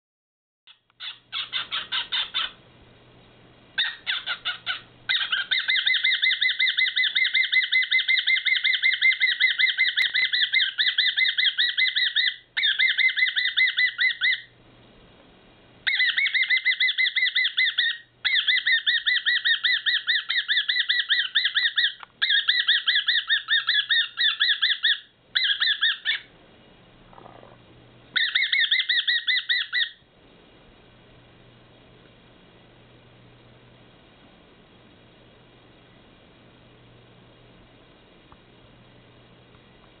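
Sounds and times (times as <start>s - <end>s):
cockatiel buzzy squawks: 0.7s - 2.6s, 3.8s - 14.5s, 15.8s - 26.3s, 28.1s - 30.0s.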